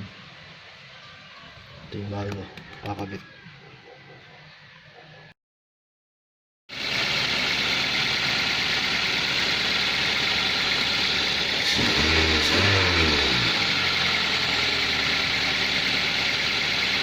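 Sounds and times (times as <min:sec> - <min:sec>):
car engine idling: 0:06.7 - 0:17.0.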